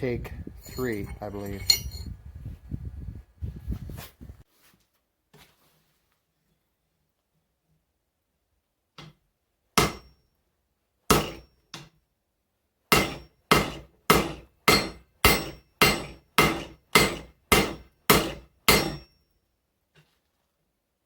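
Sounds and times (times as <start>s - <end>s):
hammer striking steel on anvil: 9.8s - 10.1s, 11.1s - 11.9s, 12.9s - 19.2s.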